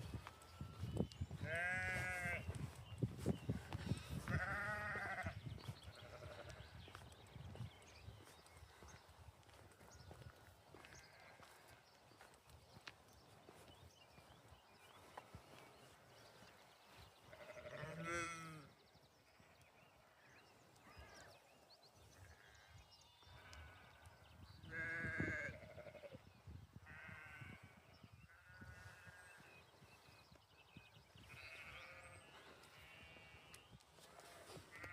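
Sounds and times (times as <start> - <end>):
lambs bleating: 1.4 - 2.5, 4.2 - 5.3, 10.7 - 11.5, 17.4 - 18.6, 24.7 - 26.1, 26.9 - 27.5, 31.4 - 32.1, 32.7 - 33.5.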